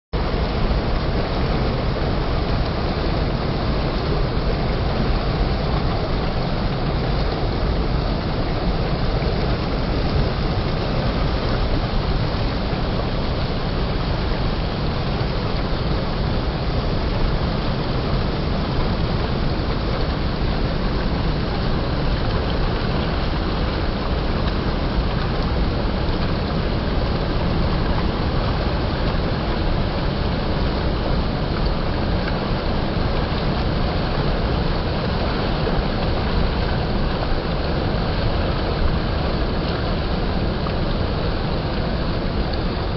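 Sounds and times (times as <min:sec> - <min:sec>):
rushing water: 0:00.2 - 0:42.9.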